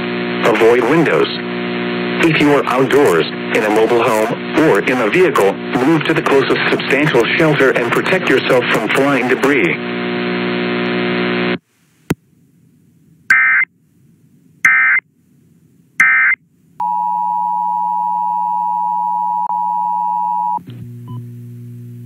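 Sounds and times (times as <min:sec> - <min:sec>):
electronic data screeches: 0:13.3 - 0:13.7.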